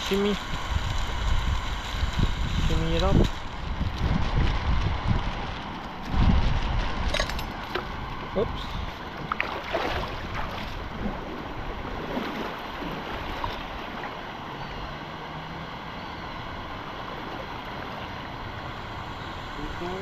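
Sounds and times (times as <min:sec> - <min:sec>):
river water rushing: 0:08.9 - 0:15.9.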